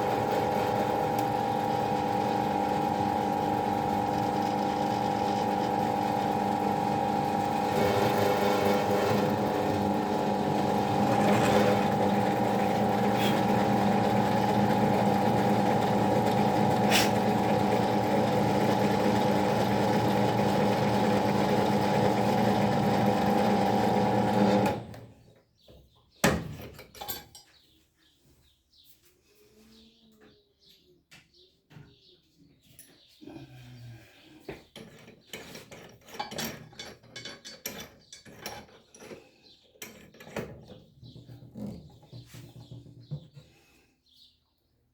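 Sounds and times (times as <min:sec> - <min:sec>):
power tool motor hum: 0:00.0 - 0:25.1.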